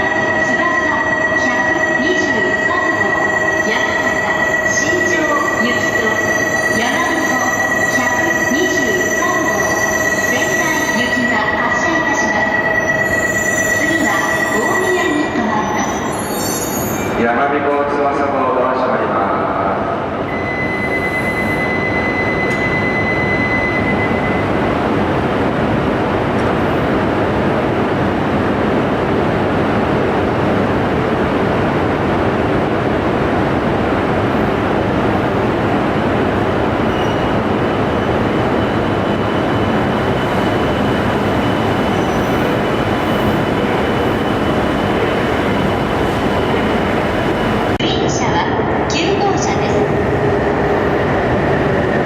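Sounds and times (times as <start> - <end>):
high steady tone: 0.0 - 17.2, 20.2 - 25.3.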